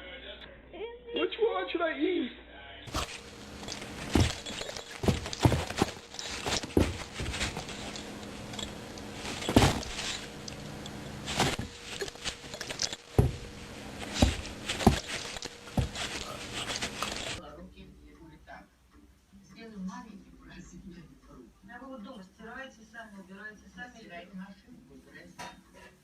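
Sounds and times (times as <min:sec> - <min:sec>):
faint steady hum: 0:02.9 - 0:18.6.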